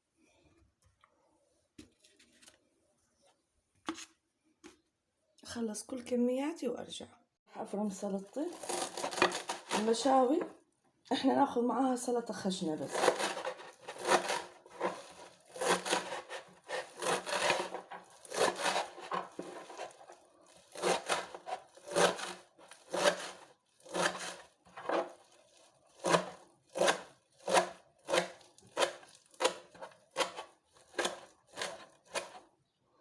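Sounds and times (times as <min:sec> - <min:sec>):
knife chopping on cutting board: 0:26.0 - 0:32.4.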